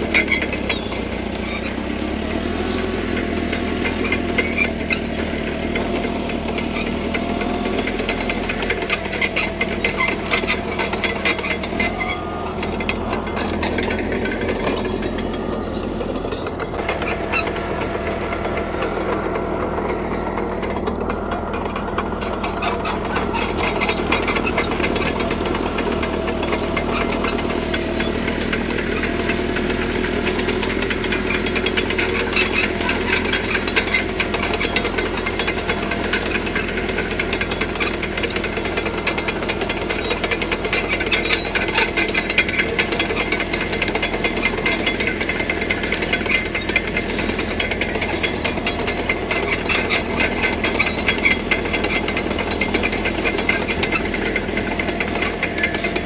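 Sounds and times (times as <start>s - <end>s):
diesel engine running under load: 0.0s - 56.0s.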